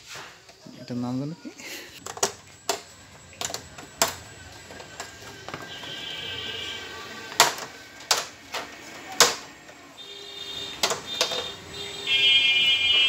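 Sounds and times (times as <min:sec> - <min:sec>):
sharp clicks and knocks: 0:10.8 - 0:11.6.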